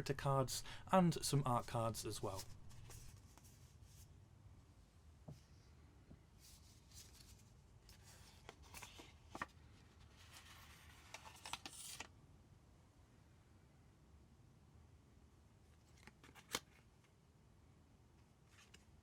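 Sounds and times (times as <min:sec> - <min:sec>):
paper and card rustling: 0:00.0 - 0:04.1, 0:06.4 - 0:12.1, 0:15.8 - 0:16.8, 0:18.5 - 0:18.9.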